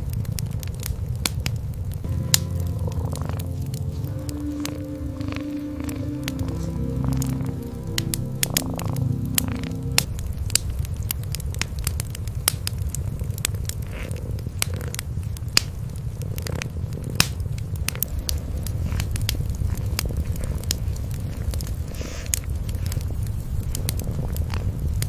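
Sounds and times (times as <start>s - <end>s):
wood fire crackling and popping: 0.0s - 25.0s
cat purring: 2.7s - 7.5s.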